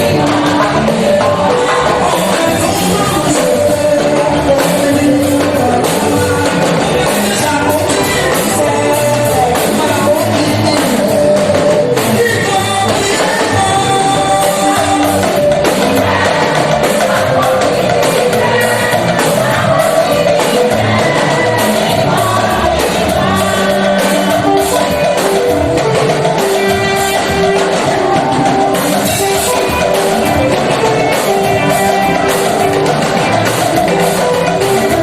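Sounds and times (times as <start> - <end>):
choir singing with live band: 0.0 - 35.0.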